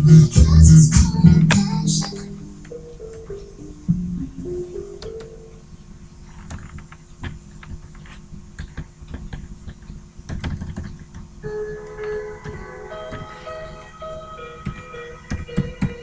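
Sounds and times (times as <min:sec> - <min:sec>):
computer keyboard typing: 0:06.4 - 0:11.3, 0:14.6 - 0:16.0
chiming background music: 0:11.6 - 0:16.0.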